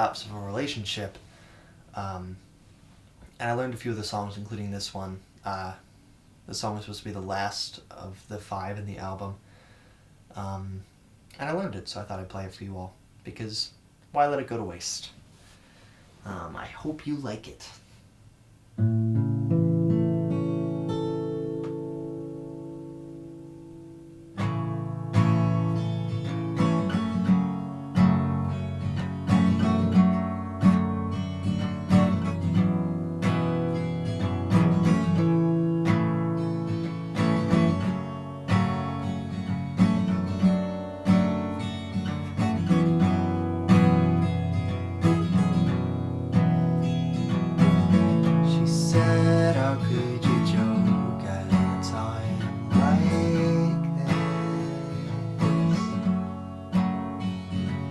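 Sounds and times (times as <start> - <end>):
acoustic guitar strumming chords: 18.8 - 57.9.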